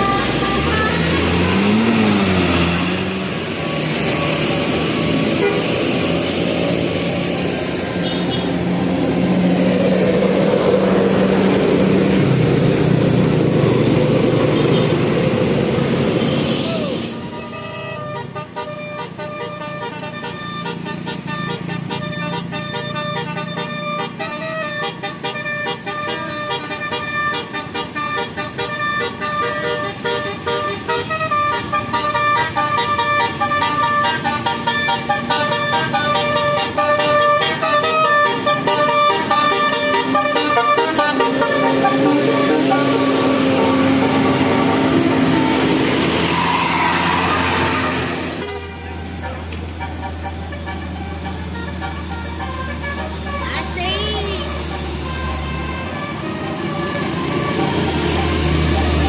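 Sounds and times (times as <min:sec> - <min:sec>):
multi-tone air horn tune: 0:00.0 - 0:02.6, 0:03.4 - 0:08.7, 0:16.1 - 0:59.0
bus engine and road noise: 0:00.0 - 0:59.0.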